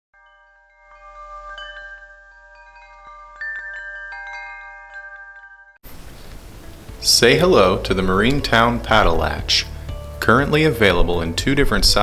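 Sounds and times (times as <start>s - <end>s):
chimes ringing: 0.2s - 5.8s.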